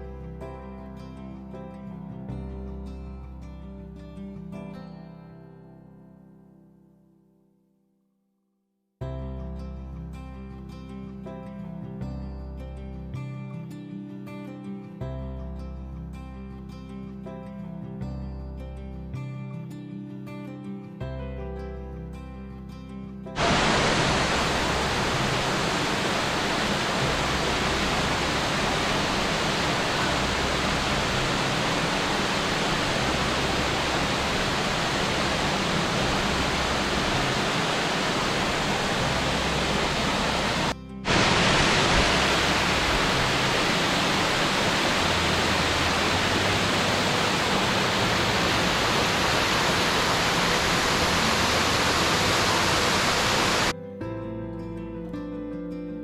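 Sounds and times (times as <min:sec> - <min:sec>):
waterfall rushing: 0:23.4 - 0:53.7.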